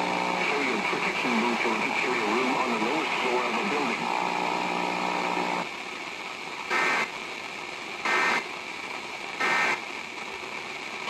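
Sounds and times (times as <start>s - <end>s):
radio static: 0.0s - 5.7s, 6.6s - 7.2s, 8.0s - 8.6s, 9.3s - 9.9s
buzzy digital data bursts: 9.4s - 9.8s.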